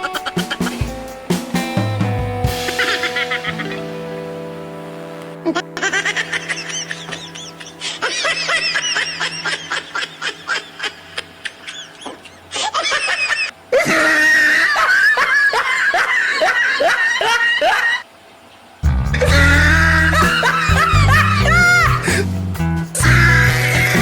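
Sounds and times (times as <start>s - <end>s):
people laughing: 0.0s - 0.9s, 2.5s - 4.2s, 5.4s - 18.0s, 19.2s - 22.3s
loud music with heavy bass: 18.8s - 24.0s.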